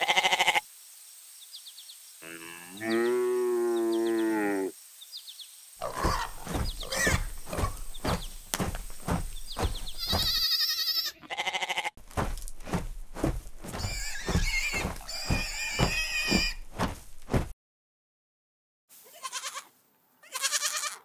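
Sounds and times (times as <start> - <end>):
steady thumps: 5.8 - 10.4, 12.0 - 17.5.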